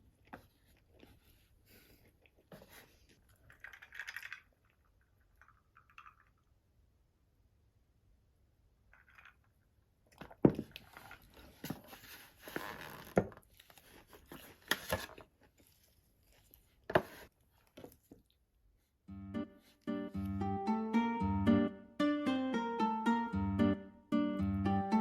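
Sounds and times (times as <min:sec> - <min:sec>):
plucked-string background music: 0:19.1 - 0:25.0.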